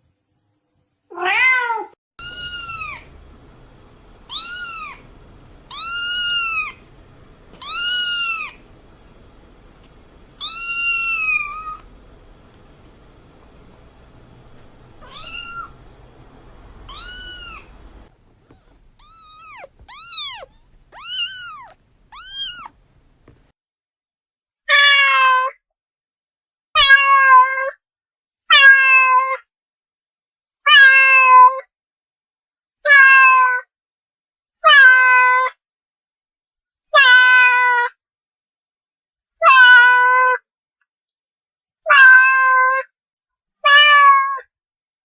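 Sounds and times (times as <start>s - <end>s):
cats meowing: 1.2s - 3.2s, 4.2s - 6.9s, 7.5s - 8.6s, 10.4s - 11.9s, 13.4s - 23.4s.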